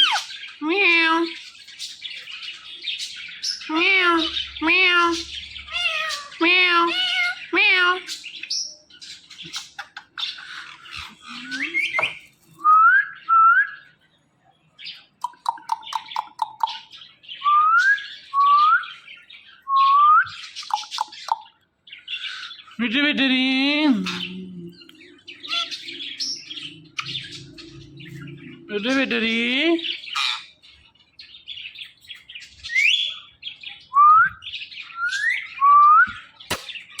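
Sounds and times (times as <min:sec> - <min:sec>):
parrot mimicking a word: 0:03.7 - 0:08.1, 0:22.9 - 0:25.8
parrot whistles and chirps: 0:17.4 - 0:21.0, 0:32.7 - 0:33.3, 0:33.9 - 0:36.6.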